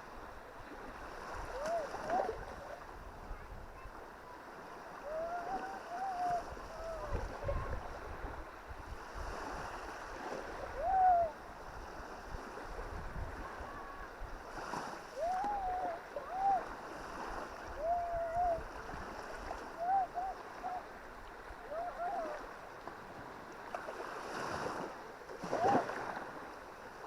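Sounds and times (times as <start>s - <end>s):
waves washing onto beach: 0.0s - 27.0s
wind rumbling on microphone: 5.0s - 23.5s.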